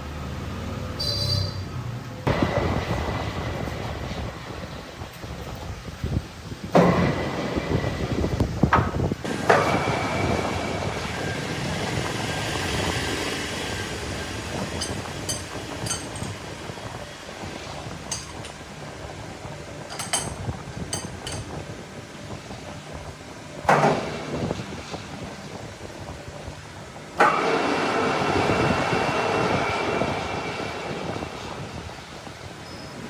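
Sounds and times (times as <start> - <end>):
metal lathe running: 9.2 - 21.5
ringing metallic clinks: 14.8 - 16.4.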